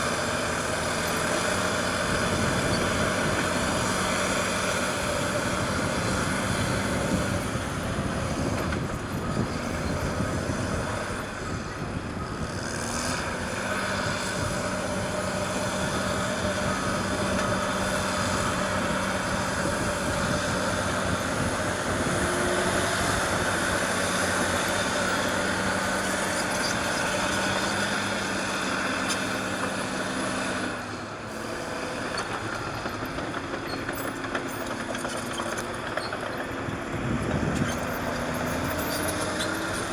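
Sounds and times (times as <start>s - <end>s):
diesel engine running under load: 0.0s - 39.9s
clatter of steel tracks: 13.6s - 39.9s.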